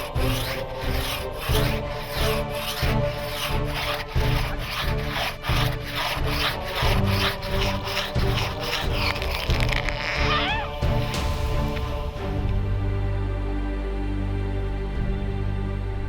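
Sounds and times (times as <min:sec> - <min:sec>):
saw cutting through wood: 0:00.0 - 0:12.0
background music with low beat: 0:00.0 - 0:16.0.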